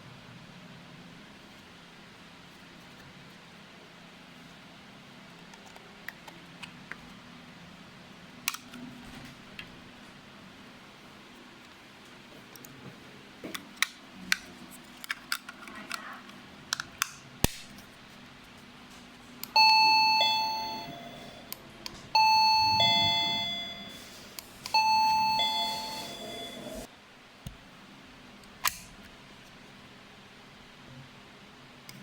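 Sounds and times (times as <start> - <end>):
doorbell ding-dong chime: 19.6 - 21.4, 22.2 - 24.2, 24.8 - 26.9.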